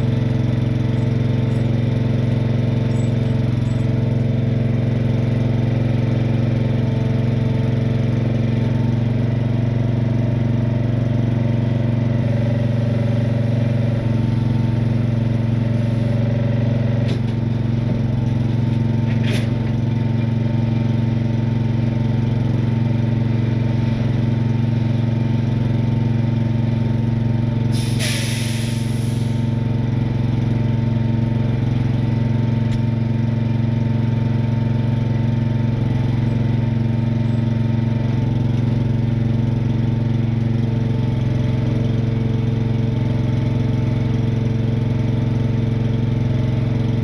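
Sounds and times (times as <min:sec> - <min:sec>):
truck engine idling: 0:00.0 - 0:47.0
short hiss: 0:27.8 - 0:29.4.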